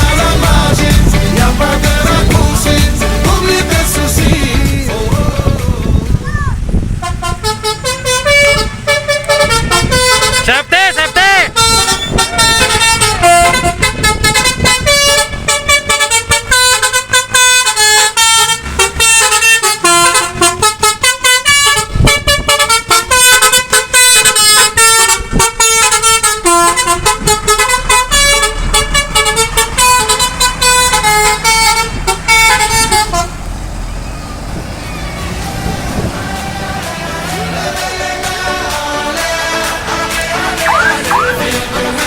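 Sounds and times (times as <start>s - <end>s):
musical air horn tune: 6.9s - 33.5s, 40.4s - 41.6s.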